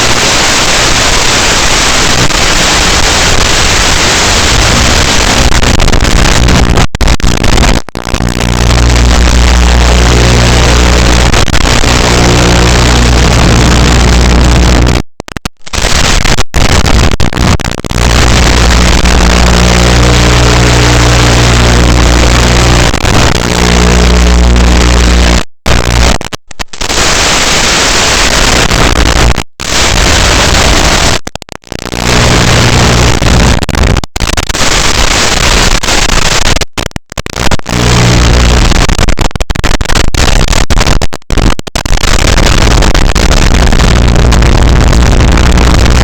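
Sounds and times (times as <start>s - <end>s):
drone propellers buzzing: 8.8s - 14.9s.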